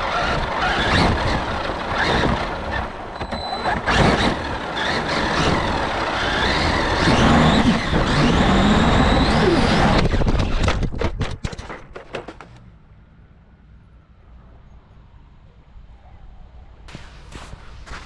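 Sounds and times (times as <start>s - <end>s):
rc truck motor whine: 0.0s - 11.0s.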